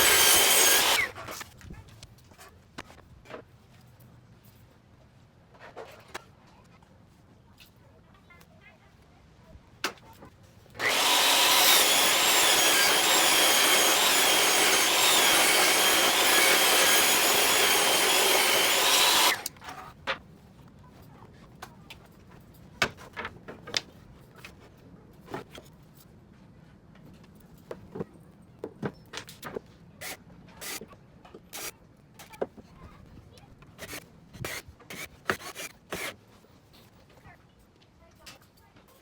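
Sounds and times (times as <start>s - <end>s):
power tool whining on wood: 0.0s - 1.2s, 10.8s - 19.5s.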